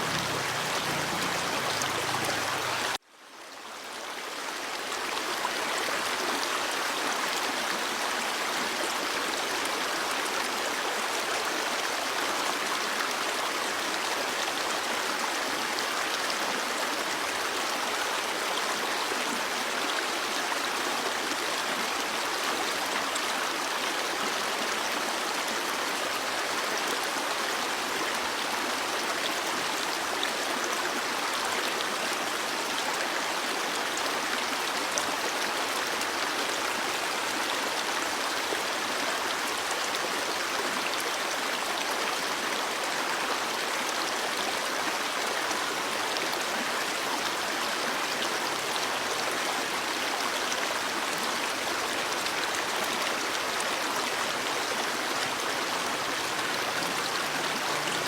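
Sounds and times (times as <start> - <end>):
stream flowing over rocks: 0.0 - 58.0.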